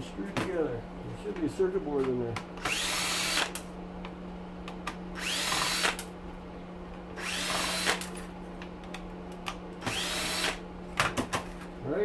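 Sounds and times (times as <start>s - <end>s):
power drill spinning: 2.6s - 3.6s, 5.2s - 6.1s, 7.2s - 8.0s, 9.8s - 10.6s.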